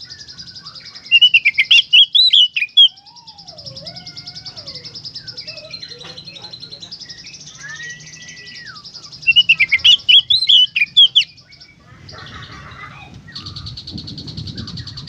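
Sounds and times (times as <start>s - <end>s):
bird warbled notes: 0.0s - 11.8s
bird drawn-out whistle: 7.5s - 11.3s.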